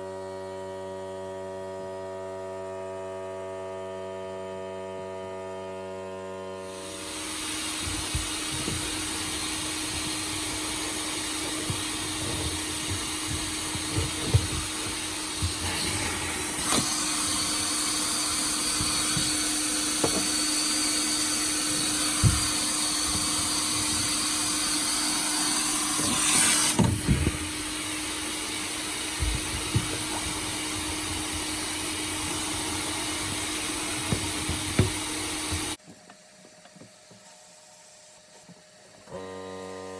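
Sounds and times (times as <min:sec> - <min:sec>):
vacuum extraction drone: 0:06.3 - 0:35.8
blast gun air hissing: 0:06.7 - 0:35.8.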